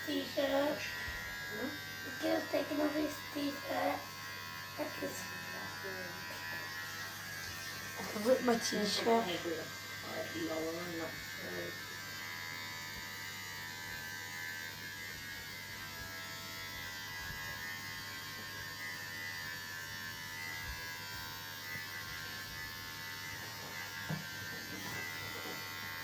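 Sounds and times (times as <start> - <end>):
electric hair clippers buzzing: 0.0 - 26.0.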